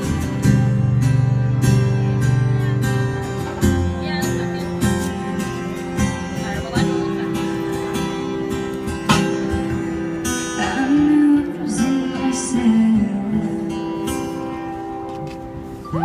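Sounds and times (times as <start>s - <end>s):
sustained bass notes: 0.0s - 14.1s
guitar chords: 0.0s - 16.0s.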